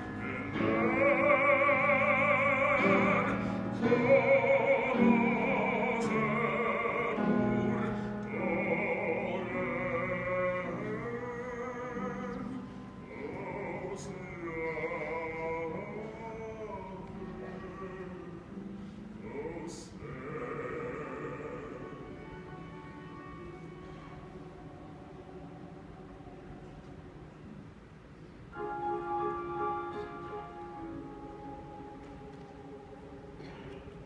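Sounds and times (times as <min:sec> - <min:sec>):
choir singing: 0:00.0 - 0:15.8.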